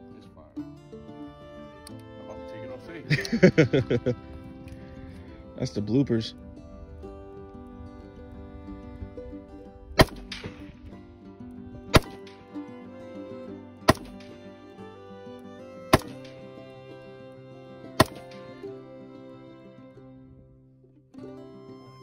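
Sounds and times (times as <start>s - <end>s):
background music: 0.0s - 6.4s, 7.3s - 20.3s
sharp loud bangs: 10.0s - 10.7s, 12.0s - 12.4s, 13.9s - 14.4s, 15.9s - 16.4s, 18.0s - 18.4s.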